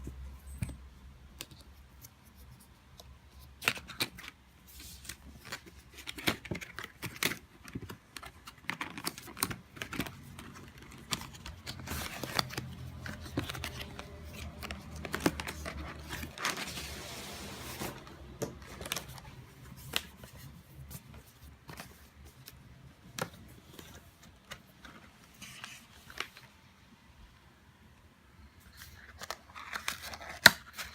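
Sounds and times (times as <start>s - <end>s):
packaging crinkling and tearing: 3.6s - 21.2s, 28.8s - 30.9s.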